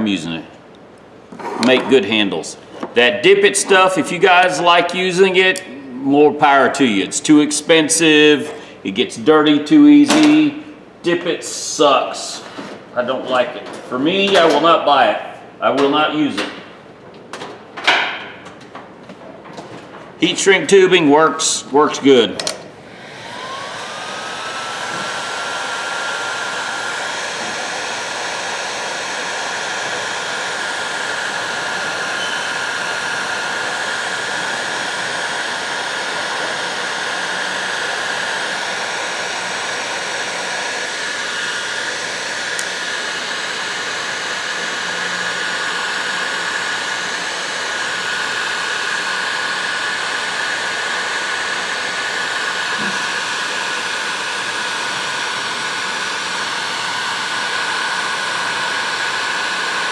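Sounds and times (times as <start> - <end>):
heat gun motor whine: 22.4 - 59.9.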